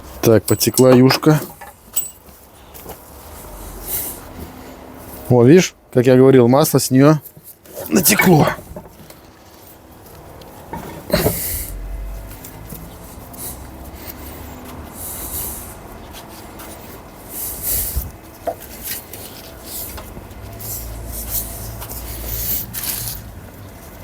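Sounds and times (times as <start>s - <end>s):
metal parts scraping: 0.2s - 2.3s, 10.7s - 11.9s, 21.3s - 23.3s
light metal clinks: 0.4s - 2.4s.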